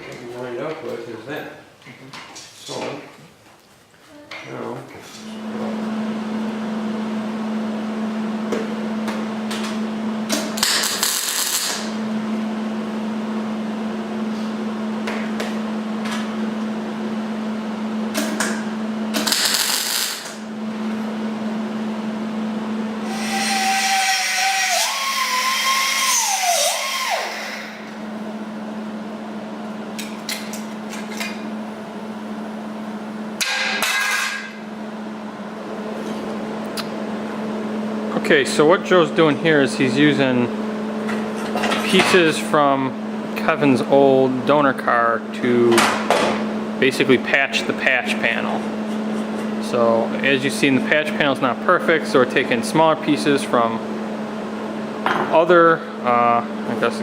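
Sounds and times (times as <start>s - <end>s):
tool whine: 8.5s - 12.5s, 18.1s - 21.1s, 22.7s - 29.0s
power tool humming: 10.3s - 12.0s, 19.1s - 20.5s, 23.0s - 28.4s.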